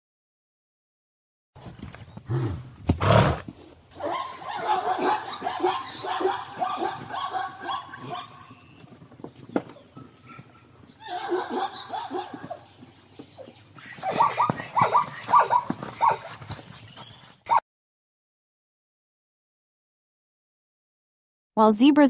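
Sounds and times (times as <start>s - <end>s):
zebra yelping barks: 3.9s - 8.9s, 9.8s - 16.4s.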